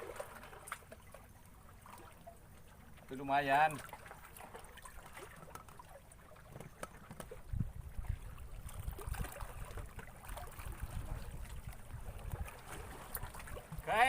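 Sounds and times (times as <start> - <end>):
light water sounds: 0.0 - 14.0
wind rumbling on microphone: 7.0 - 14.0.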